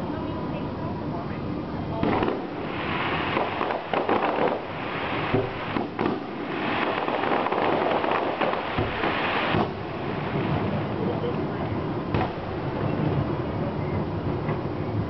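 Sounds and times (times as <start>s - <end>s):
fireworks crackling: 0.0s - 15.0s
fireworks bangs: 1.9s - 15.0s.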